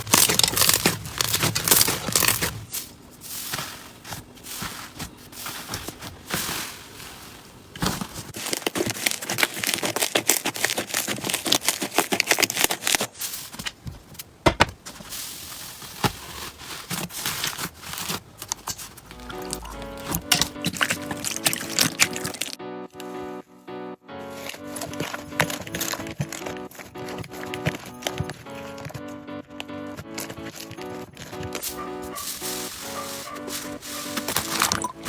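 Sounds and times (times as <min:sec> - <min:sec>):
slime crackling and popping: 0:00.0 - 0:02.8, 0:07.8 - 0:13.3, 0:15.9 - 0:22.6, 0:24.3 - 0:35.0.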